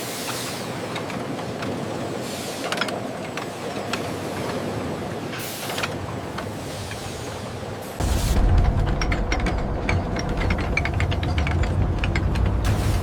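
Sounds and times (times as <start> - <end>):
industrial machinery running: 8.0 - 13.0.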